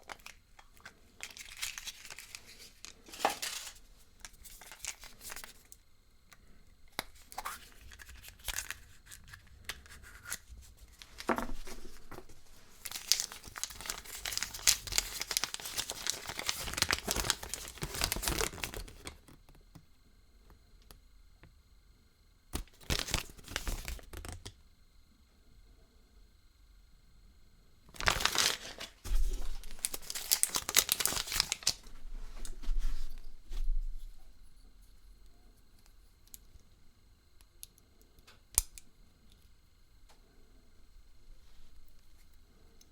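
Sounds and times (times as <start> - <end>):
foil wrapper crinkling: 0.0 - 5.8, 7.0 - 19.5, 22.6 - 24.5, 27.9 - 31.9.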